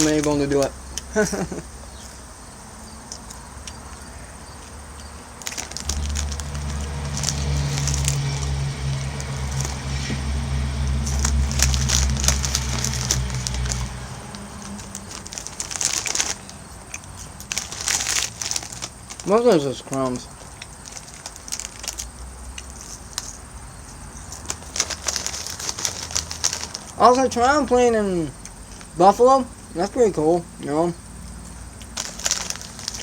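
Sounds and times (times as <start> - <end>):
chip bag crinkling: 0.0 - 2.1, 3.1 - 30.8, 31.4 - 33.0
loud low rumble: 5.6 - 16.9.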